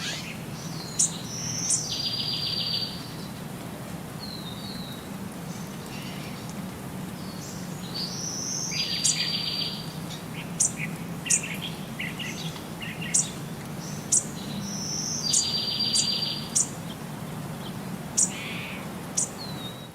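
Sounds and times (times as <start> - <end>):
bird buzzy trill: 0.0 - 0.4
small birds chirping: 0.0 - 3.4, 4.2 - 19.9.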